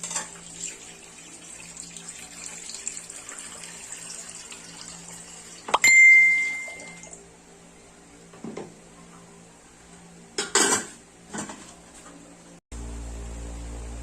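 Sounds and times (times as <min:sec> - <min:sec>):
water running into metal pot: 0:00.1 - 0:05.8
metallic clank on pot: 0:10.4 - 0:11.6.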